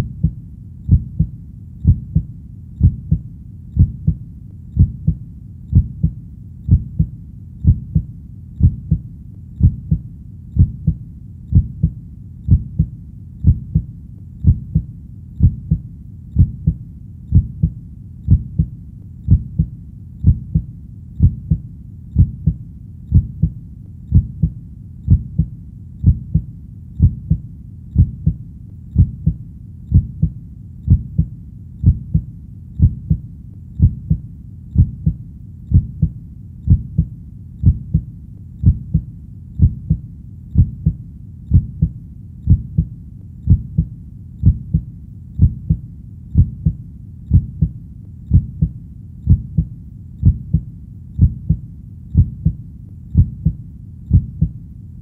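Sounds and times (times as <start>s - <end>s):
heartbeat thumping: 0.0s - 54.6s.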